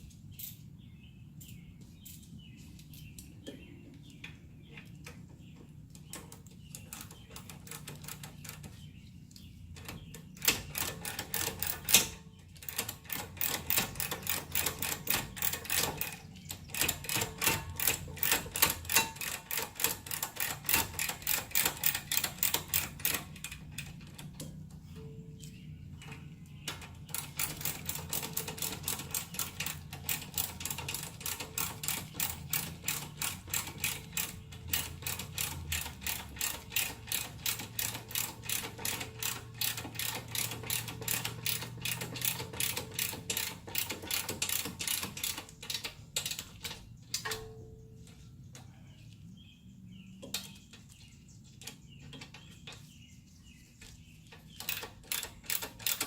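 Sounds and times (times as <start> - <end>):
ratchet wrench clicking: 10.4 - 23.6, 27.0 - 47.3, 54.6 - 56.0.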